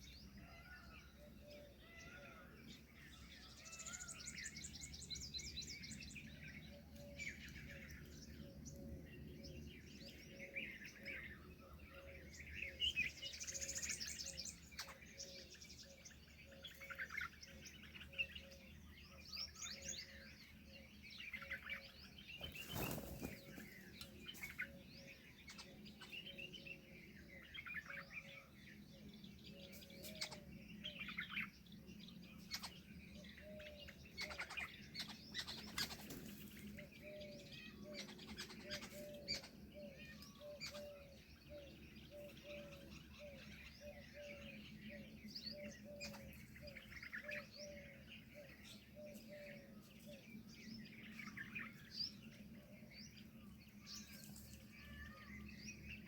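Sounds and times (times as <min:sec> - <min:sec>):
small birds chirping and trilling: 0:00.0 - 0:56.0.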